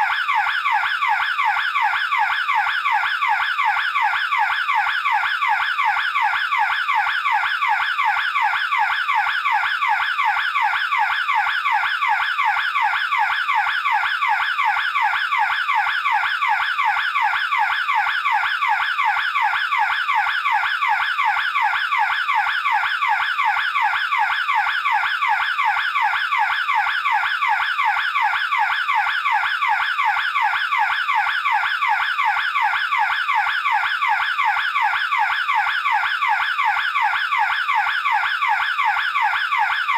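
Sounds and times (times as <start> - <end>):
burglar alarm siren wailing: 0.0 - 39.9.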